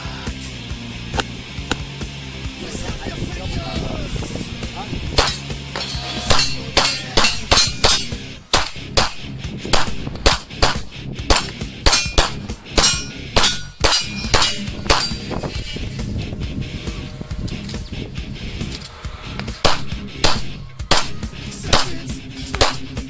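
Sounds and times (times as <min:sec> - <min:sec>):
pistol shots: 0:05.2 - 0:05.5, 0:06.3 - 0:15.2, 0:19.6 - 0:22.0
short metallic ring: 0:05.3 - 0:08.2.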